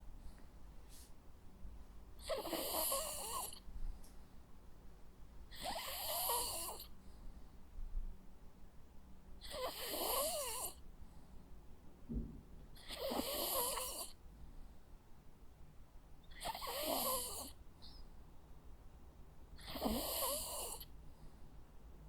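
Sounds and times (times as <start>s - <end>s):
dog snoring: 2.2s - 3.6s, 5.5s - 6.9s, 9.4s - 10.8s, 12.8s - 14.2s, 16.3s - 17.6s, 19.6s - 20.9s.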